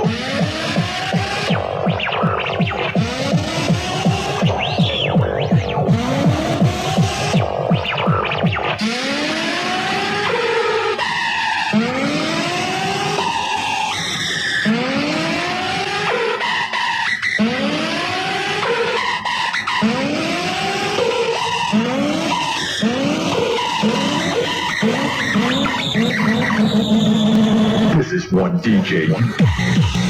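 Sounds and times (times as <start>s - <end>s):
race car engine revving: 0.0s - 7.4s, 17.6s - 28.0s.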